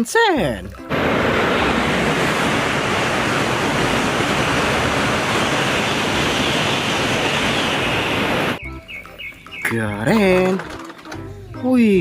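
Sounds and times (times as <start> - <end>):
running water rushing: 0.9 - 8.6.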